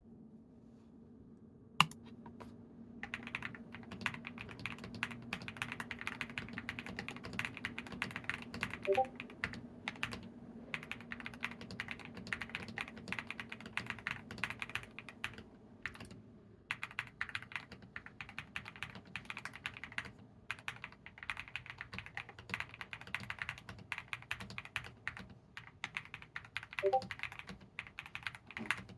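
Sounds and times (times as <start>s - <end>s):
sharp click: 1.8s - 2.0s
mechanical keyboard typing: 3.0s - 16.1s, 16.7s - 28.9s.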